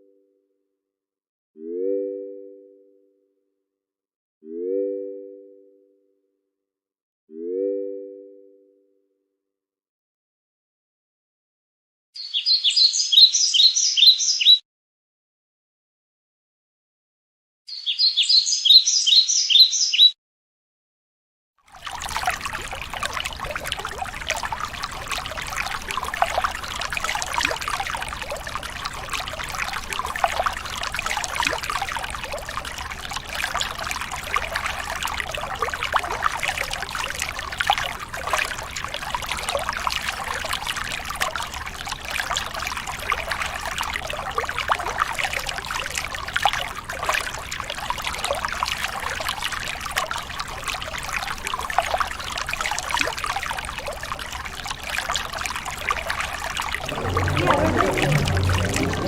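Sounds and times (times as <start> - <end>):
water trickling and dripping: 21.7 - 59.0.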